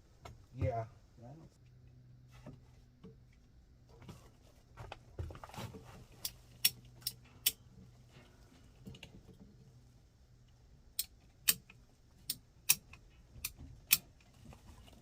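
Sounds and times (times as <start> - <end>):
rustling and handling noises: 1.5 - 10.1, 13.0 - 15.0.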